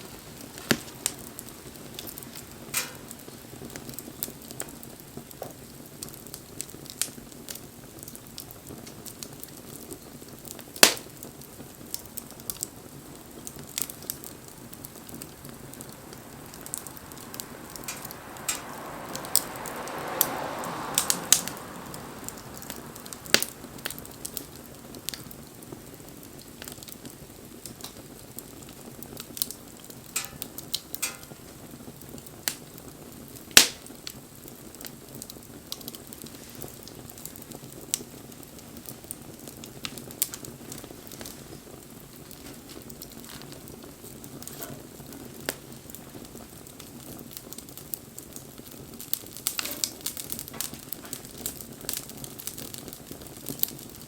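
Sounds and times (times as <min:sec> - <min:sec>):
wood fire crackling and popping: 0:00.0 - 0:54.0
hissing: 0:14.0 - 0:25.2.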